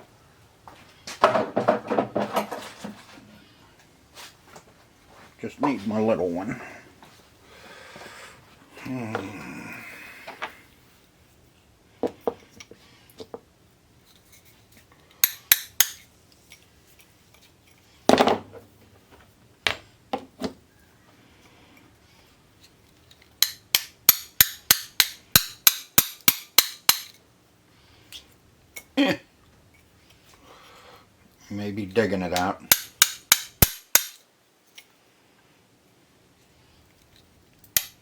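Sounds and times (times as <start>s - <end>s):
small hammer tapping metal: 15.2s - 16.0s, 23.4s - 27.2s, 32.4s - 34.2s, 37.8s - 38.0s.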